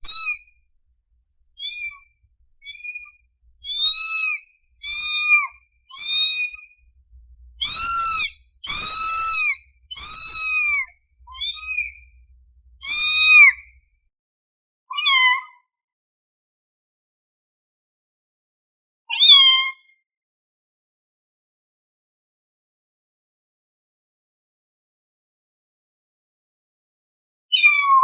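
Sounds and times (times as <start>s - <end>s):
kitten meowing: 0.0s - 0.4s, 1.6s - 2.0s, 2.6s - 6.7s, 7.6s - 12.1s, 12.8s - 13.6s, 27.6s - 28.0s.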